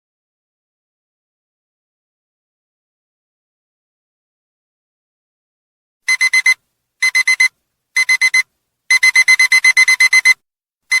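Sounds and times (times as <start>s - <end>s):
digital alarm clock beeping: 6.1s - 11.0s.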